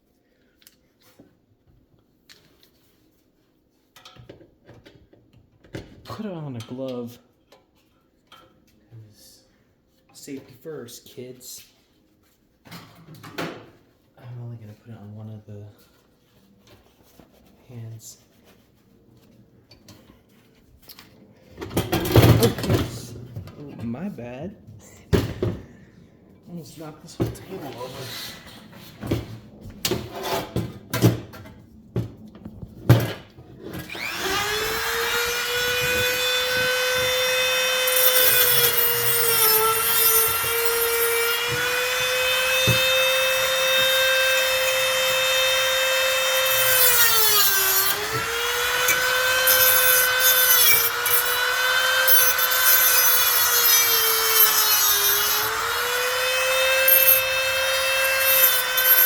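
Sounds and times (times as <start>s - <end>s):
rotary tool grinding metal: 33.8s - 59.0s.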